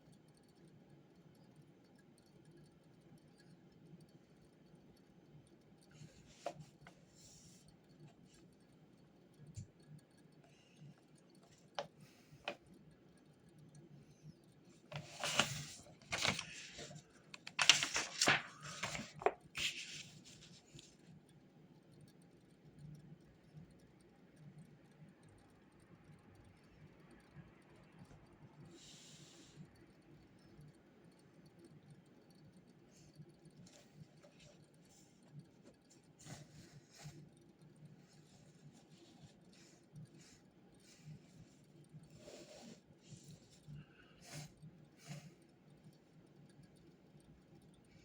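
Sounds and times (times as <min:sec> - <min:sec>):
faint low hum: 0:00.0 - 0:48.0
rustling and crinkling: 0:14.8 - 0:21.0.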